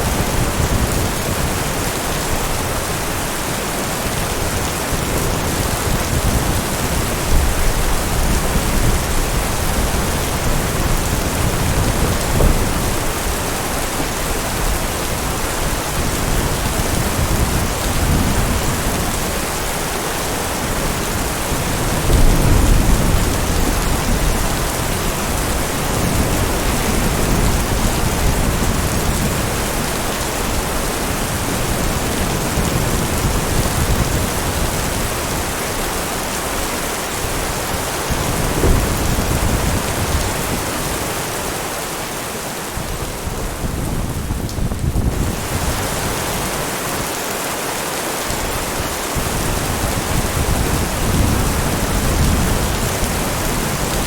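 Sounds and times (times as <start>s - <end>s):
heavy rain: 0.0s - 54.0s
rolling thunder: 14.5s - 41.2s.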